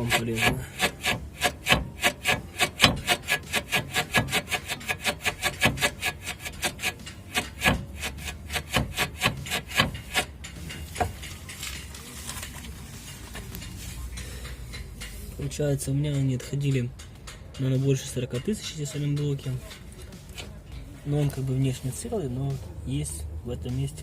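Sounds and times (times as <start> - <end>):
rubber bushing creaking: 0.0 - 11.6.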